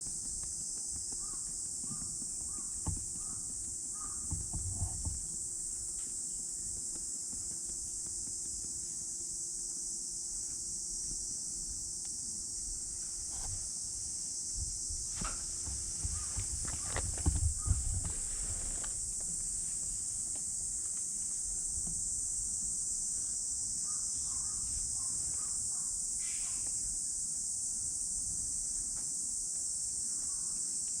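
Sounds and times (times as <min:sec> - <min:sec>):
dull thumps: 0:00.0 - 0:05.4, 0:14.6 - 0:20.4
high buzz of insects: 0:00.0 - 0:31.0
low thumps: 0:14.9 - 0:19.4.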